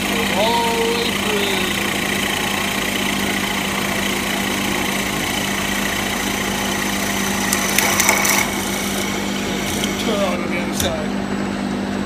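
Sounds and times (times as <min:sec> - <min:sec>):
milling machine spindle hum: 0:00.0 - 0:12.0.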